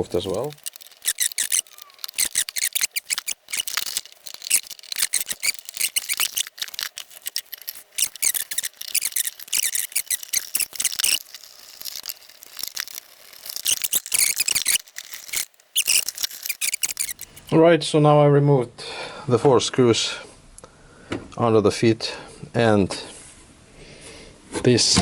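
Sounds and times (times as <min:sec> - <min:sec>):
screwdriver scraping metal screws: 0:00.0 - 0:17.5.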